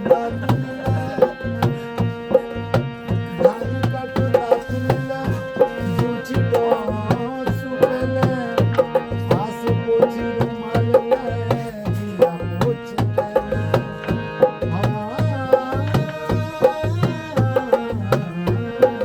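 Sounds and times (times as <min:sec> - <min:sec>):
hand drum beating: 0:00.0 - 0:19.0
held melody line: 0:00.0 - 0:19.0.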